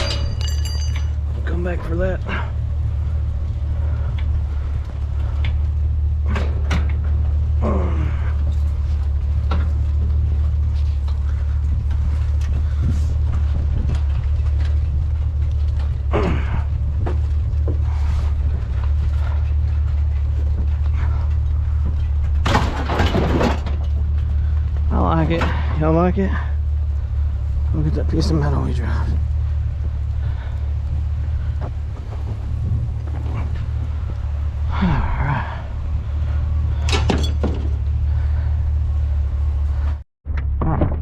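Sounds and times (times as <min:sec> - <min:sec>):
steady low rumble: 0:00.0 - 0:41.0
scrap knocking and clattering: 0:08.4 - 0:25.6, 0:36.7 - 0:38.0
loud crash: 0:22.4 - 0:23.9.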